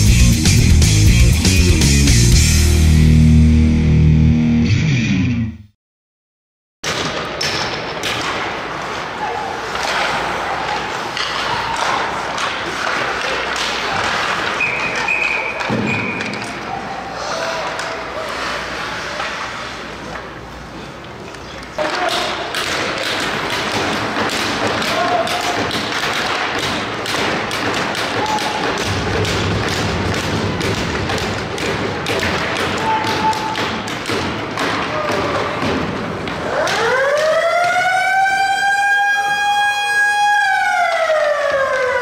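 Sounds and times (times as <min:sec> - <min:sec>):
hockey sticks and puck thuds: 0:06.8 - 0:37.9
arena background noise: 0:07.0 - 0:42.0
high whistle: 0:14.6 - 0:16.4.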